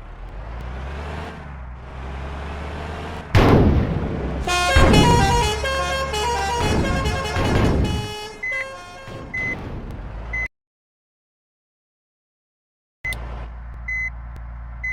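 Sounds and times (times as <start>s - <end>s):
vehicle rushing by: 0.0s - 8.5s
vehicle engine rumble: 0.0s - 10.5s, 13.1s - 14.9s
air horn playing a melody: 4.5s - 9.2s.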